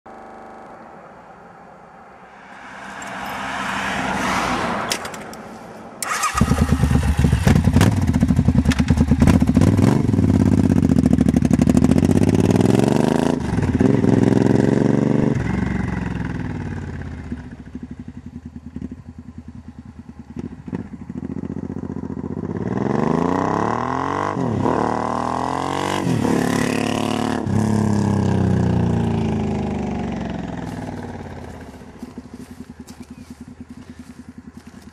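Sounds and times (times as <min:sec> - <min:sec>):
motorcycle engine starter cranking: 0:06.0 - 0:07.6
motorcycle engine revving and idling: 0:06.0 - 0:34.9.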